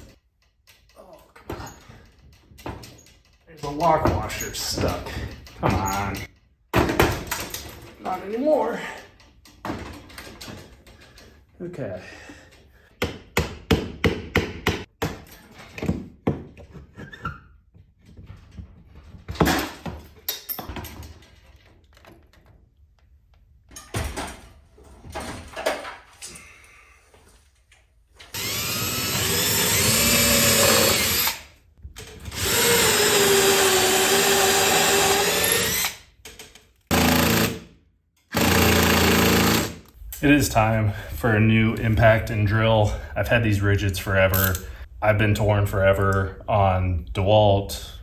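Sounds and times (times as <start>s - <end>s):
hardware clicking and clattering: 0.0s - 11.6s
cordless drill running: 28.3s - 31.4s, 32.3s - 36.0s, 36.9s - 37.6s, 38.3s - 39.9s.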